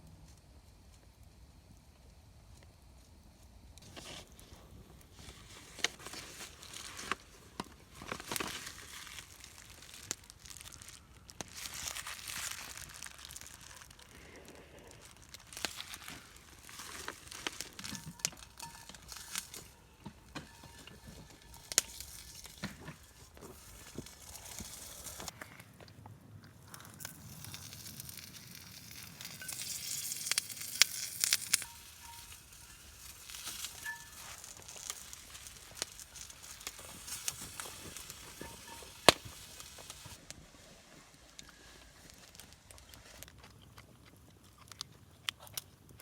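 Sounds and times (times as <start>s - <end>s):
wrapping crinkling and rustling: 3.8s - 25.8s, 26.5s - 45.7s
wrapping tearing: 5.1s - 25.3s, 26.7s - 40.2s.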